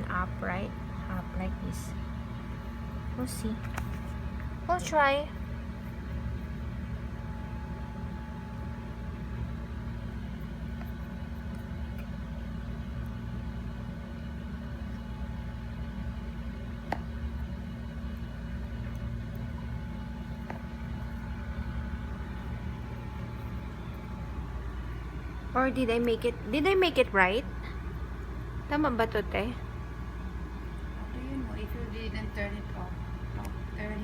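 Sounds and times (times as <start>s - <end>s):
low machine hum: 0.0s - 34.0s.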